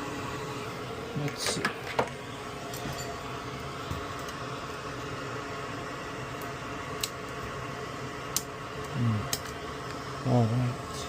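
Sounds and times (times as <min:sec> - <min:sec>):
machine hum and hiss: 0:00.0 - 0:11.0.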